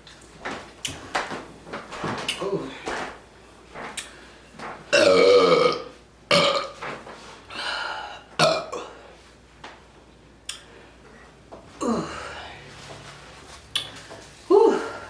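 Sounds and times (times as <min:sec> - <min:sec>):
woman burping: 0:04.9 - 0:06.8, 0:08.4 - 0:09.0, 0:11.8 - 0:12.4, 0:14.5 - 0:15.0.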